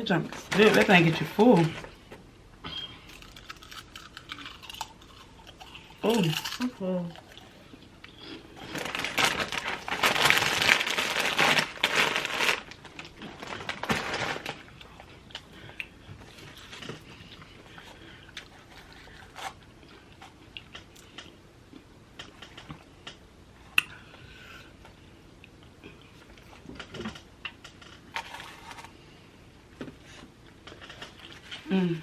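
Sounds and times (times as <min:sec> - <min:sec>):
sandwich crunching while chewed: 0:03.0 - 0:22.8.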